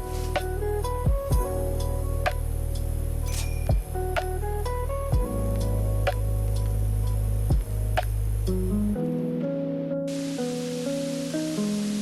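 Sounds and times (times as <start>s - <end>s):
electronic music with bass drone: 0.0s - 9.0s.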